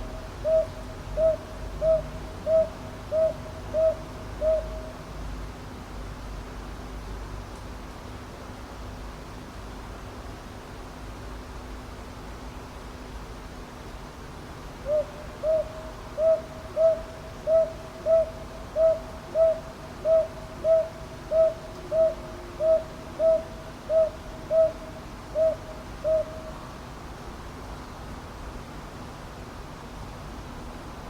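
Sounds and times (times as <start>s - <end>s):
owl hooting: 0.4s - 5.0s, 14.8s - 26.6s.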